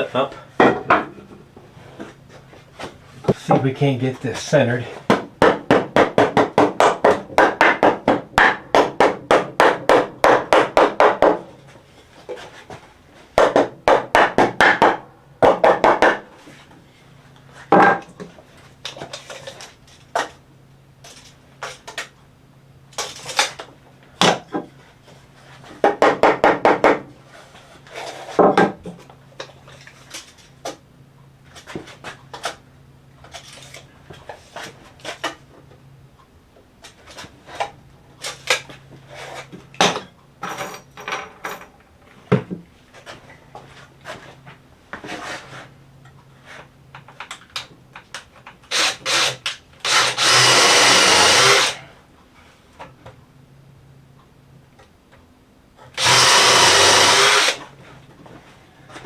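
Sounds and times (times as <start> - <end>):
hammer tapping on wooden boards: 5.1 - 11.4, 25.8 - 27.0.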